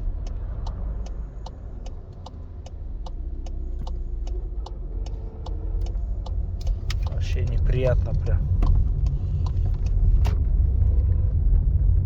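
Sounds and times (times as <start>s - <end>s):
car cabin rumble: 0.0s - 12.0s
sharp regular tick: 0.2s - 7.6s.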